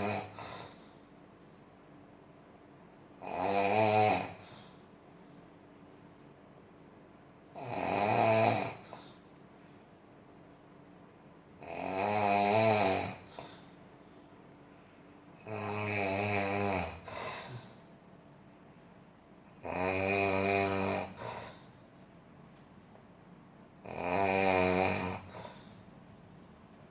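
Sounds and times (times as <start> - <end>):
person snoring: 0.0 - 0.8, 3.2 - 4.8, 7.5 - 9.2, 11.6 - 13.6, 15.4 - 17.7, 19.5 - 21.7, 23.8 - 25.7.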